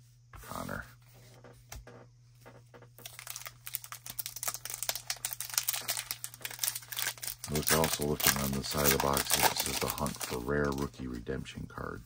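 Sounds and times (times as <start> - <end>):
foil wrapper crinkling: 3.0 - 11.0.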